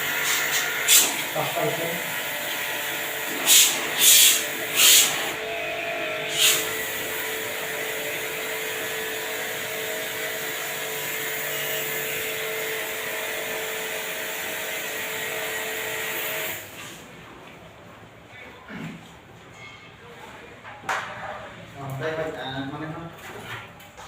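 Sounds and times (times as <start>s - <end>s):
small electric motor hissing: 0.1s - 1.2s, 3.4s - 5.4s, 6.3s - 7.1s.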